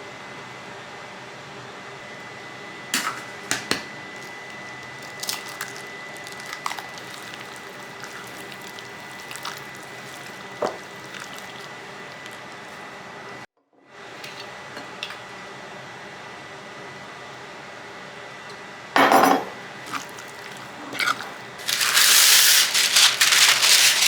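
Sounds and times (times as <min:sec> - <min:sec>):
steady background hum: 0:00.0 - 0:24.0
wet squishing: 0:04.2 - 0:12.9, 0:19.8 - 0:24.0.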